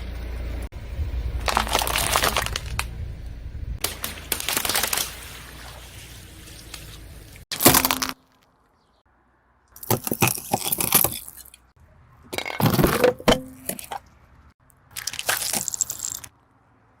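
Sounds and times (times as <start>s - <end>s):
objects crunching under car tyre: 1.3s - 3.0s, 3.8s - 8.7s, 9.7s - 11.7s, 12.3s - 14.2s, 14.9s - 16.4s.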